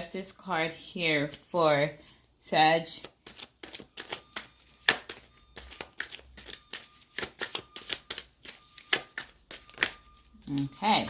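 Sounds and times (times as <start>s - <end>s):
cards being shuffled: 3.0s - 11.0s.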